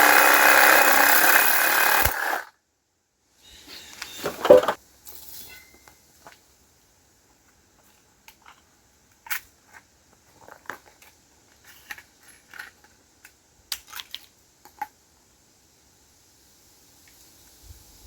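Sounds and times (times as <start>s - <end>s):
small metal parts clicking: 10.4s - 14.9s.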